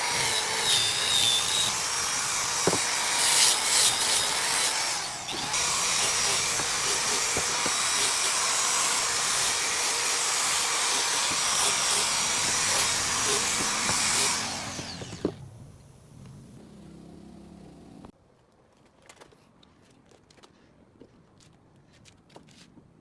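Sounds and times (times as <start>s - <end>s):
electric power tool on wood: 0.0s - 18.0s.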